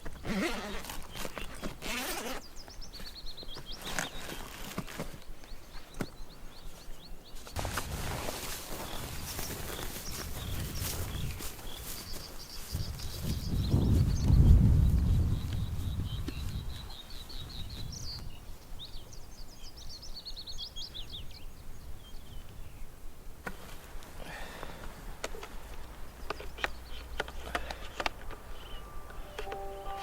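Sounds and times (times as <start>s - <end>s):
bird singing: 0.0s - 7.6s, 8.7s - 23.0s, 24.4s - 30.0s
faint rustle: 0.0s - 19.2s, 20.9s - 30.0s
sharp clicks: 25.2s - 29.6s.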